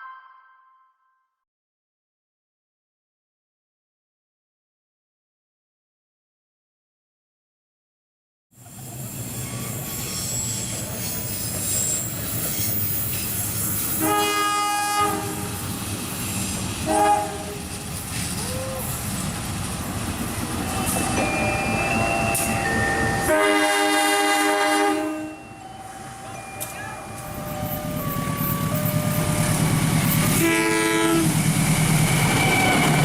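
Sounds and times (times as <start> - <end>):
train running noise: 8.6 - 33.0
locomotive air horn blasts: 13.9 - 15.6, 16.8 - 17.8, 23.2 - 25.6, 26.9 - 31.5.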